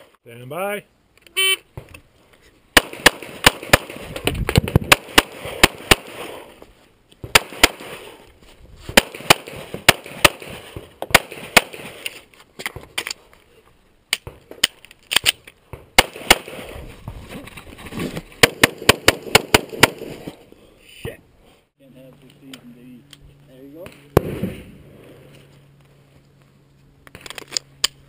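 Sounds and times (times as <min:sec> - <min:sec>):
pistol firing rapidly: 0:02.8 - 0:04.0, 0:04.9 - 0:06.2, 0:07.3 - 0:08.0, 0:09.0 - 0:10.5, 0:11.1 - 0:11.8, 0:16.0 - 0:16.6, 0:18.4 - 0:20.0.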